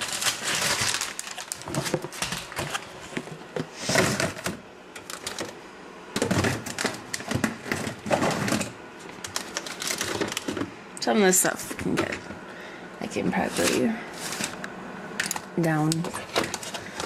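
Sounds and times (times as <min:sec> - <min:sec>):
kitchen items clattering: 0:00.0 - 0:05.5, 0:06.2 - 0:10.7, 0:15.2 - 0:17.0.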